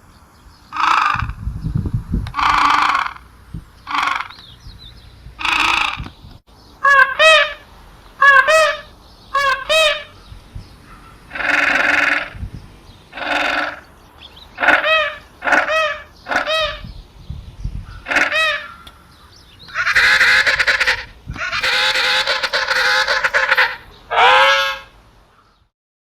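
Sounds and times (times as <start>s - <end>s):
penguins calling: 2.3s - 3.2s, 3.9s - 4.4s, 5.4s - 6.1s, 8.2s - 10.1s, 11.3s - 12.4s, 13.2s - 13.8s, 14.6s - 16.8s, 18.0s - 18.9s, 19.7s - 24.9s.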